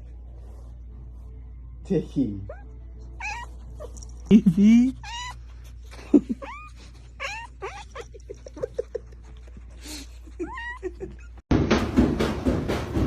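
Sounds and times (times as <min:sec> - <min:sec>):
pet animal calling: 0:02.4 - 0:04.1, 0:04.7 - 0:08.7.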